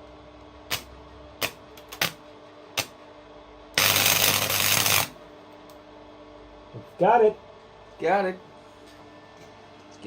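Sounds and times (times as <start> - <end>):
welding arc zapping: 0.7 - 2.2, 3.8 - 5.2.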